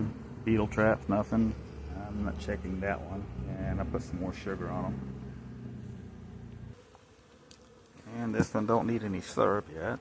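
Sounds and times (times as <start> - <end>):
bees buzzing: 0.0 - 10.0.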